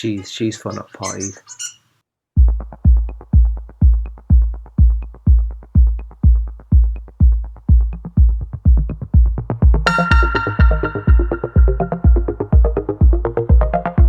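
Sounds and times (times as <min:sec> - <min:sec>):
drum machine kick: 0:02.4 - 0:14.0
electronic dance music: 0:02.4 - 0:14.0
hi-hat ticks: 0:02.6 - 0:09.1.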